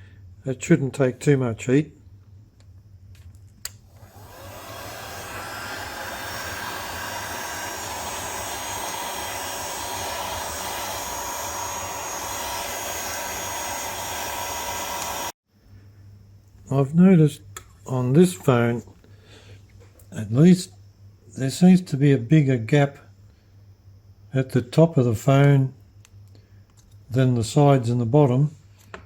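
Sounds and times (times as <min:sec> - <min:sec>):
hot-air blower blowing: 0:03.7 - 0:15.4.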